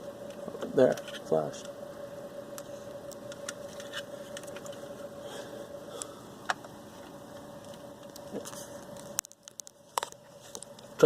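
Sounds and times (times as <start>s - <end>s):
steady faint hum: 0.0s - 11.0s.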